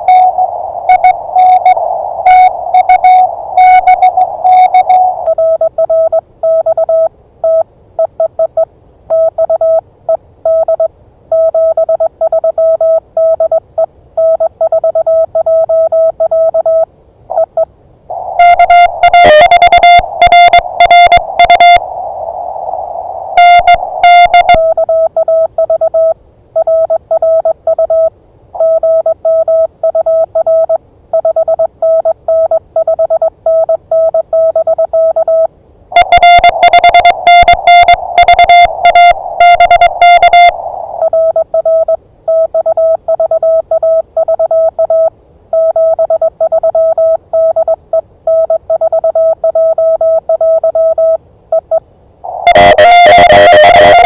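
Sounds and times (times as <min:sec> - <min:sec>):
radio receiver hiss: 0:00.0 - 0:05.6, 0:18.1 - 0:24.9, 0:35.9 - 0:41.5, 0:52.2 - 0:54.0
morse code beeps: 0:00.0 - 0:09.8, 0:10.5 - 0:13.6, 0:14.2 - 0:17.6, 0:18.4 - 0:22.4, 0:23.4 - 0:51.8, 0:52.4 - 0:54.0
higher keyed tone: 0:18.1 - 0:24.8, 0:36.0 - 0:41.4, 0:52.3 - 0:54.0.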